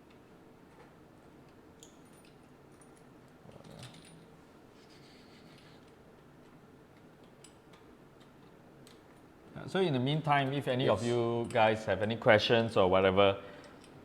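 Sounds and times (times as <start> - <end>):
small metal clicks and clinks: 1.5 - 4.3, 7.0 - 9.3, 13.6 - 14.0.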